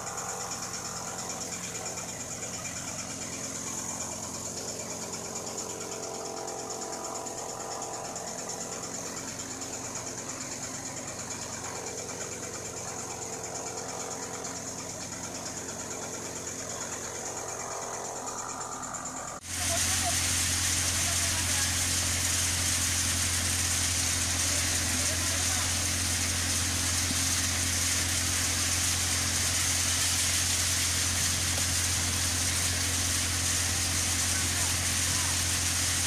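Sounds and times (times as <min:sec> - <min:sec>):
machinery high whine: 0:00.0 - 0:36.0
machinery low hum: 0:00.0 - 0:36.0.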